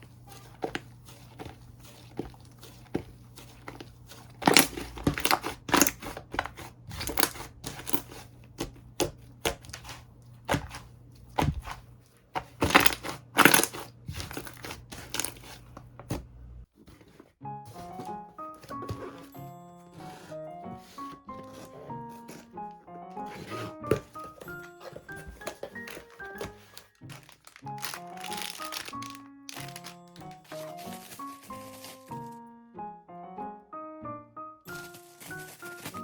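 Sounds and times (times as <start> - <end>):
slime squishing with crackling pops: 0.4 - 15.5.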